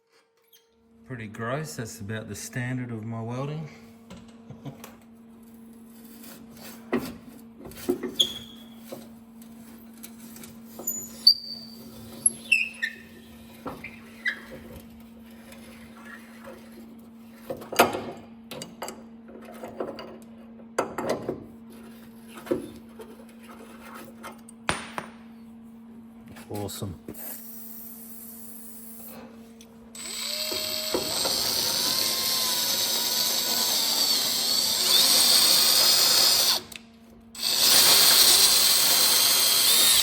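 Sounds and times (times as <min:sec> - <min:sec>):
steady low hum: 0:00.9 - 0:07.5.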